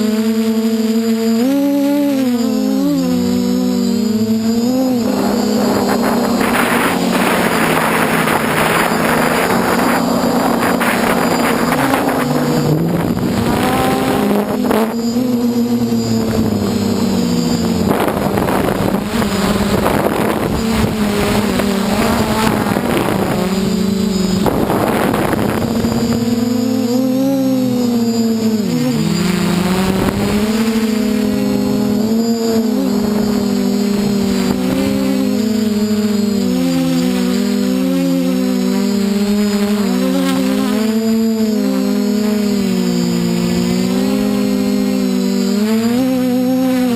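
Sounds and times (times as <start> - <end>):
drone propellers whining: 0.0 - 46.9
wind buffeting microphone: 4.1 - 36.0.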